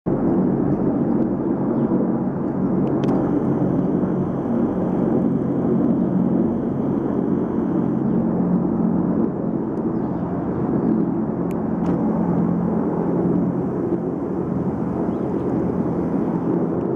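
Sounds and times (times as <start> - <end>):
helicopter rotor and engine drone: 0.1 - 16.9
high turbine whine: 0.1 - 16.9.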